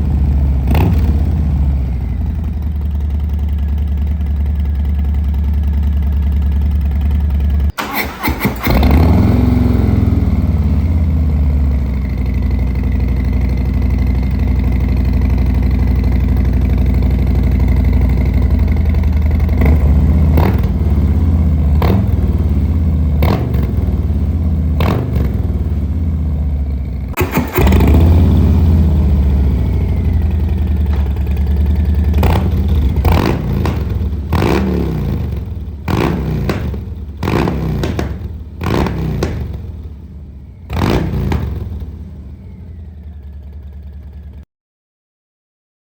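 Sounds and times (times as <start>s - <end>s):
motorcycle engine idling and revving: 0.0s - 44.5s
short sharp exhaust cracks: 7.7s - 9.9s, 27.2s - 41.9s.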